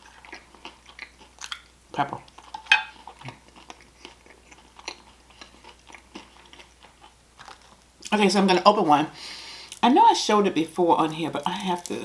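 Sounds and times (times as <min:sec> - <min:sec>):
person chewing food: 0:00.0 - 0:08.2.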